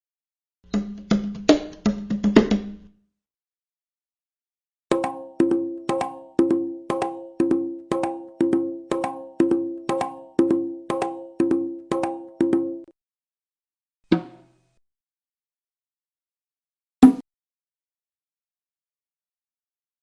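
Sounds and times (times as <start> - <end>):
drum struck in steady beat: 0.7 - 2.9, 17.0 - 17.2.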